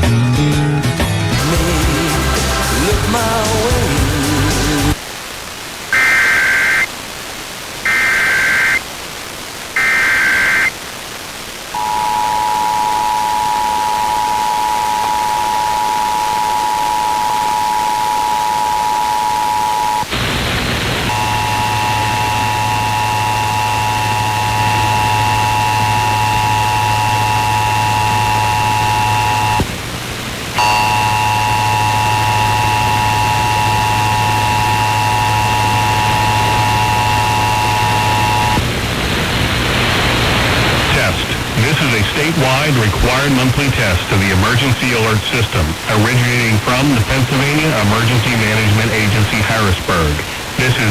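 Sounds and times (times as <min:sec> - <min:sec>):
harsh buzzing chord: 0:05.9 - 0:06.9, 0:11.8 - 0:38.6
warbling digital screeches: 0:06.0 - 0:06.9, 0:07.9 - 0:08.8, 0:09.8 - 0:10.7
two-tone attention signal: 0:11.8 - 0:20.1, 0:21.1 - 0:29.6, 0:30.6 - 0:38.6
low hum: 0:11.8 - 0:49.3.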